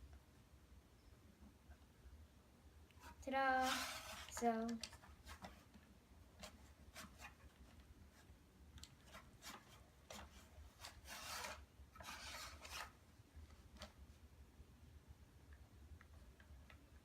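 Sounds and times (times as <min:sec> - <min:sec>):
plastic toy parts scraping and clicking: 0:03.0 - 0:05.8, 0:08.8 - 0:13.0.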